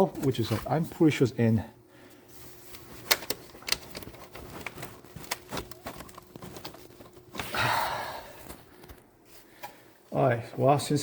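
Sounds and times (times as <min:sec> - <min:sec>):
plastic parts clicking and knocking: 0:03.0 - 0:07.5.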